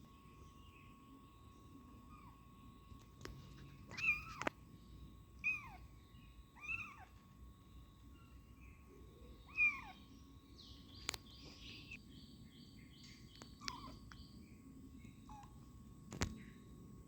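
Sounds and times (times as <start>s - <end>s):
faint high chirps: 0.0s - 16.9s
kitten mewing: 5.4s - 5.8s
small clicks: 11.0s - 11.3s.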